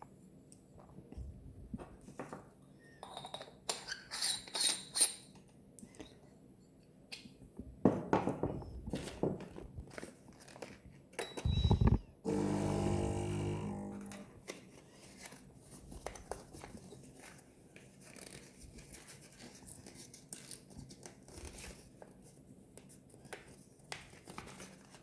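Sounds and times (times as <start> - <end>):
steady pitched hum: 11.5 - 14.3.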